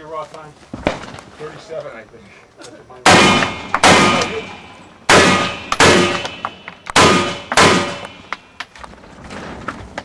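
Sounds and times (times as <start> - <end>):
rifle shots with metallic ring: 3.1 - 8.4.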